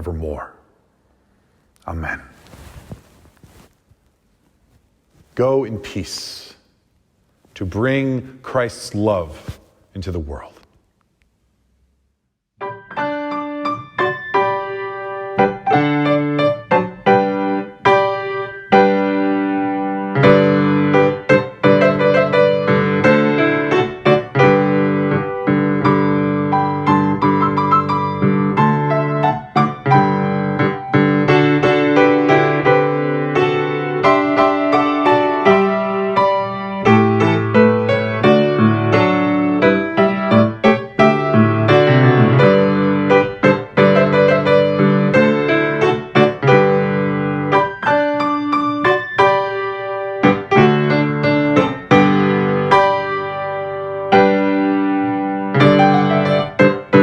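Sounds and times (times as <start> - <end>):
solo piano playing: 12.6 - 57.0.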